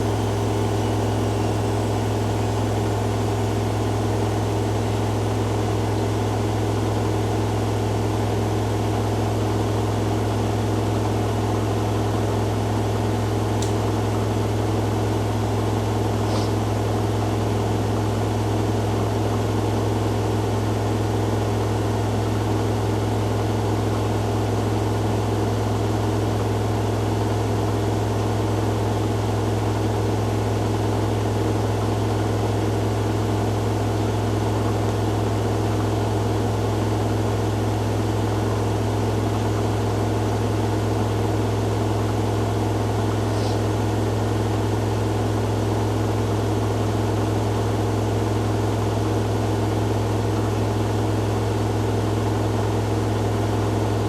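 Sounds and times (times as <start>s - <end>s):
washing machines spinning: 0.0s - 54.0s.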